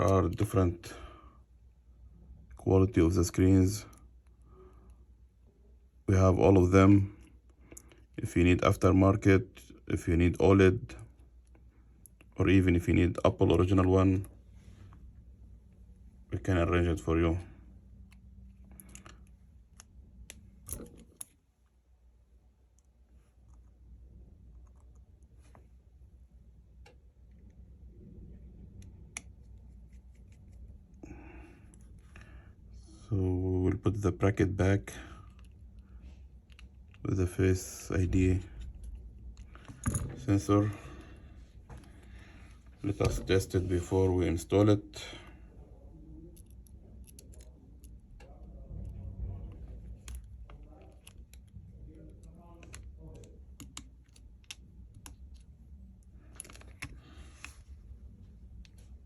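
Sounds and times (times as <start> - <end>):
low steady hum: 0.0 - 59.0
small tools and parts clicking: 18.0 - 21.4, 46.3 - 49.0, 49.9 - 57.6.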